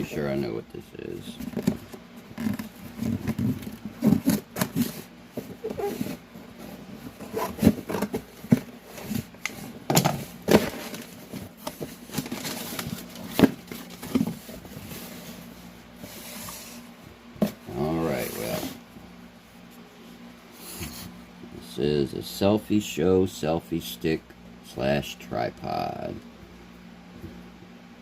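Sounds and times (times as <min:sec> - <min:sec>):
package scraping and rustling: 0:01.4 - 0:16.8.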